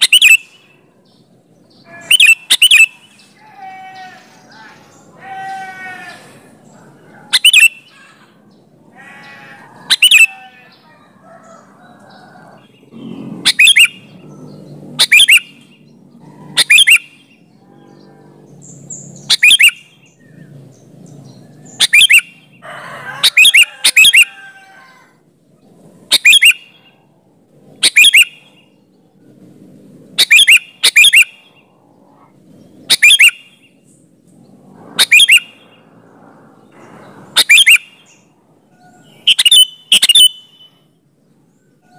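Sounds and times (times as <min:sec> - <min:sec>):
bird chirping sharply: 0:00.0 - 0:06.4, 0:07.3 - 0:10.8, 0:12.8 - 0:22.6, 0:26.1 - 0:26.9, 0:27.8 - 0:28.8, 0:30.2 - 0:31.7, 0:32.6 - 0:33.8, 0:35.0 - 0:35.8, 0:36.7 - 0:41.0.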